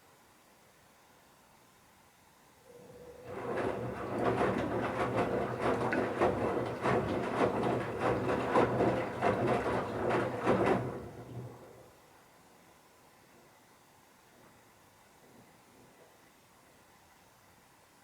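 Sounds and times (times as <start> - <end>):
washing machine motor hum: 2.7 - 12.0
wet towels tumbling: 3.2 - 11.8.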